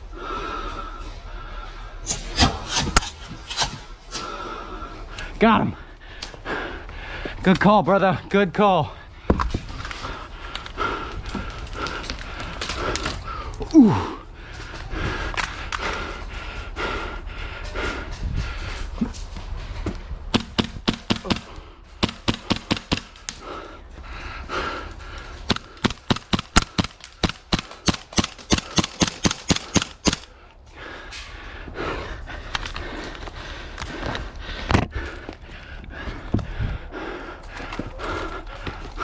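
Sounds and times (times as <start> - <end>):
airsoft guns firing: 20.3 - 23.6, 25.5 - 30.4.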